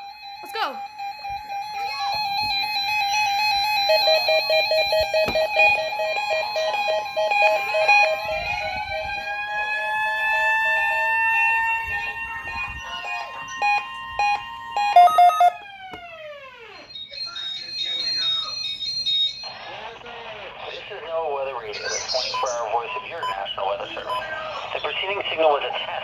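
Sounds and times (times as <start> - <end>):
siren wailing: 0.0 - 20.0
steady alarm tones: 0.0 - 26.0
fast-pulsing beeps: 11.5 - 15.6, 16.7 - 20.0, 21.7 - 24.4
short loud beeps: 12.8 - 15.6.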